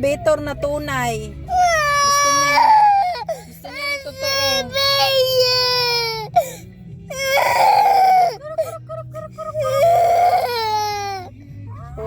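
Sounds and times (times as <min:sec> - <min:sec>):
young child crying: 0:09.6 - 0:11.3.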